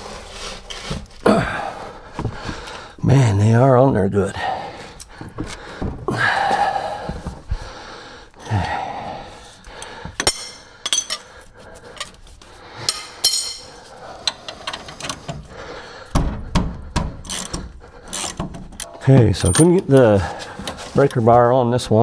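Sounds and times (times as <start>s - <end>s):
steel tools clinking on metal: 9.8s - 12.2s, 12.8s - 13.9s, 18.1s - 20.2s.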